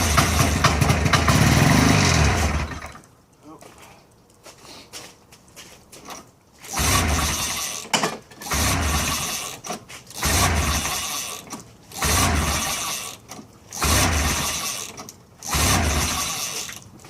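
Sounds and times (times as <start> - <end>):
two-stroke engine cranking: 0.0 - 3.0, 6.7 - 17.0.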